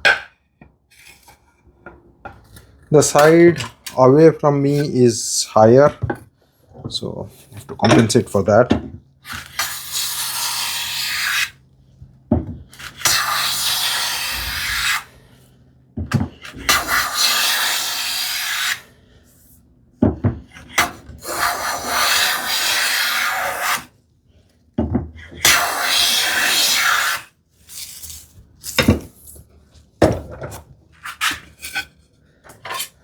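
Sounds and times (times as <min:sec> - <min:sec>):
hand plane shaving wood: 0:09.2 - 0:11.6, 0:12.6 - 0:15.4, 0:16.2 - 0:19.0, 0:20.5 - 0:23.9, 0:25.2 - 0:28.1
plane knocking on wood: 0:12.3 - 0:12.7.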